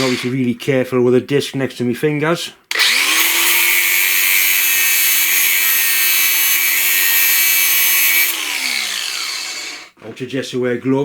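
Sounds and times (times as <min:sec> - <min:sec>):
angle grinder cutting wire: 0:00.0 - 0:00.4, 0:02.7 - 0:10.0.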